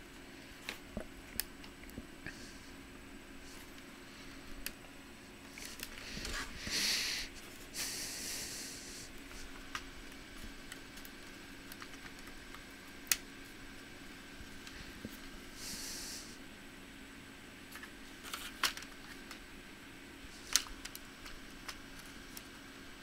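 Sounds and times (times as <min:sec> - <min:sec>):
low steady hum: 0:00.0 - 0:23.0
clicks and rustling of laptop parts: 0:17.7 - 0:19.4.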